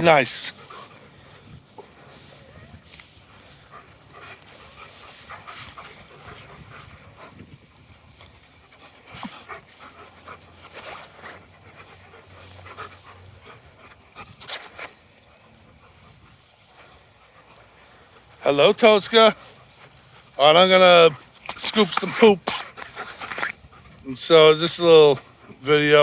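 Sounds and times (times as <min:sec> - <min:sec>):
dogs panting: 0:00.0 - 0:26.0.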